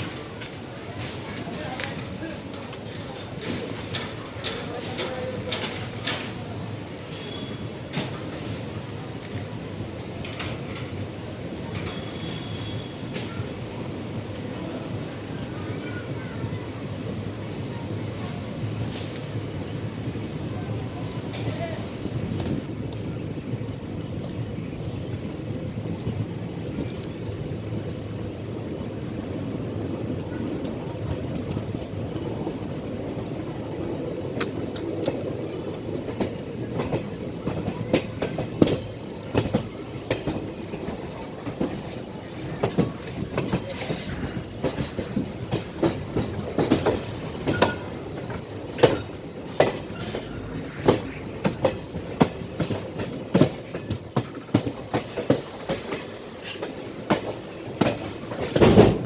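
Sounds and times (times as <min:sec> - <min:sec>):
wheel clacks on rails: 0:00.0 - 0:13.5, 0:34.2 - 0:59.0
train wheels rumbling on track: 0:00.0 - 0:59.0.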